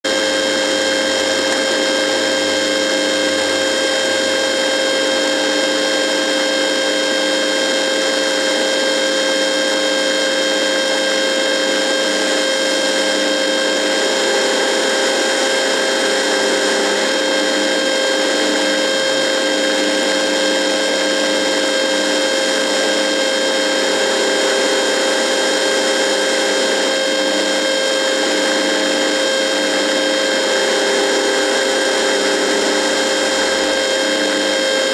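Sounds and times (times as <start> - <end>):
whining radio tones: 0.1 - 6.6, 11.5 - 20.3, 28.0 - 34.9.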